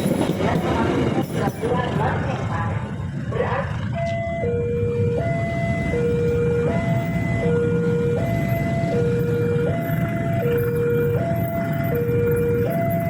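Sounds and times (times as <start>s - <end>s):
two-tone crossing alarm: 3.6s - 13.0s.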